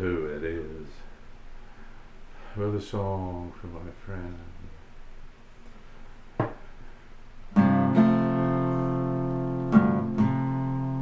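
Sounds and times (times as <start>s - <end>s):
light tap on guitar: 6.4s - 6.6s
acoustic guitar strummed: 7.5s - 11.0s.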